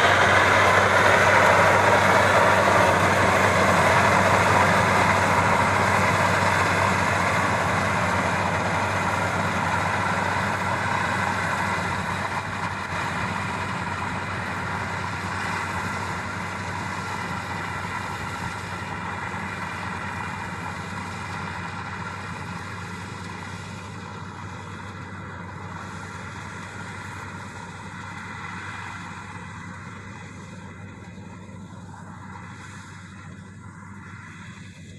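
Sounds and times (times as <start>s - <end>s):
combine harvester engine hum: 0.0s - 34.9s.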